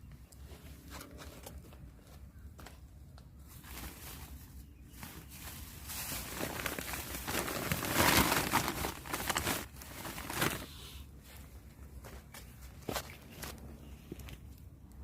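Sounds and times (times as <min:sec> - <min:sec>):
crinkling and rustling: 0:00.3 - 0:14.6.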